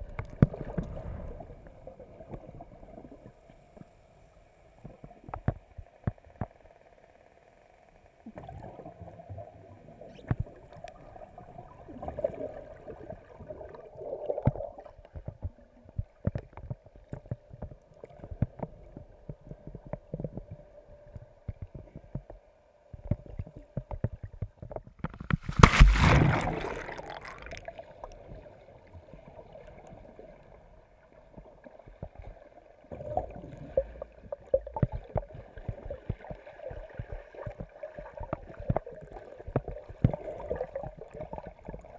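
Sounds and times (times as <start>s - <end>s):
loud rush of water and bubbles: 0.0s - 3.0s, 11.0s - 14.9s, 25.2s - 28.6s
water gurgling and sloshing: 0.0s - 6.9s, 8.2s - 41.9s.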